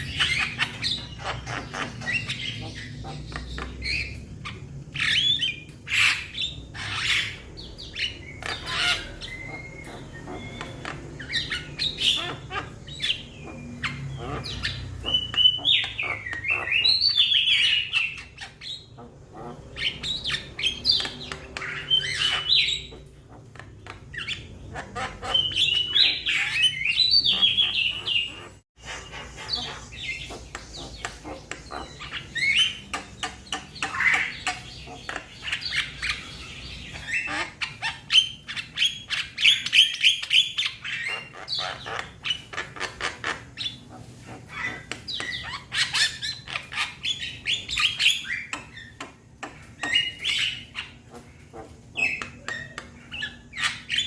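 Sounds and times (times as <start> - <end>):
birds chattering and squawking: 0.0 - 54.0.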